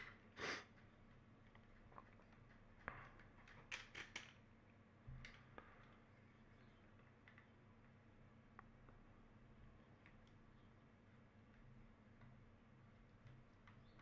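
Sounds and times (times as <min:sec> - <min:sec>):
plastic parts clicking: 0:03.4 - 0:04.4.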